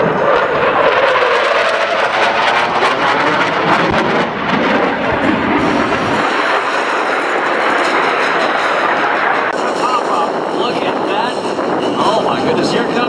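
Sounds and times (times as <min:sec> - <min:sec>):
helicopter engine and rotor: 0:00.0 - 0:13.0.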